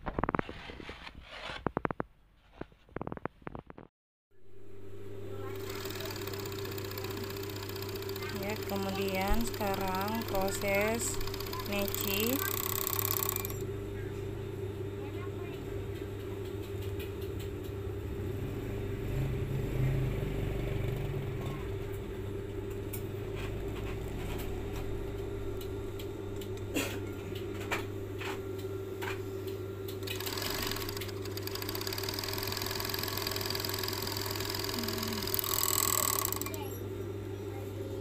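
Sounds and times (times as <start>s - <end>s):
overlock sewing machine stitching: 5.6s - 13.6s, 30.0s - 36.6s
sharp clicks: 5.6s - 13.6s.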